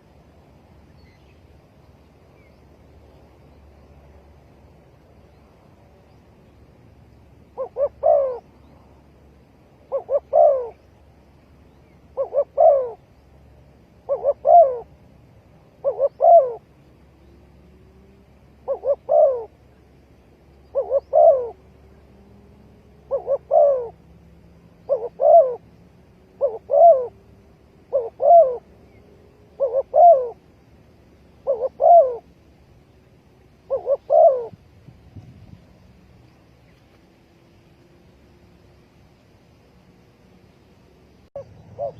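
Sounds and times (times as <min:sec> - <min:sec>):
dove cooing: 0:07.5 - 0:08.9, 0:09.7 - 0:10.9, 0:11.8 - 0:13.2, 0:14.0 - 0:15.0, 0:15.6 - 0:19.9, 0:20.6 - 0:24.1, 0:24.7 - 0:30.5, 0:31.3 - 0:32.4, 0:33.6 - 0:34.7, 0:40.9 - 0:41.9.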